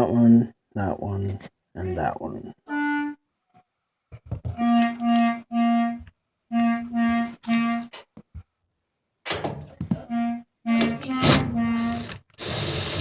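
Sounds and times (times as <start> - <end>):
cordless drill motor whine: 11.2 - 13.0.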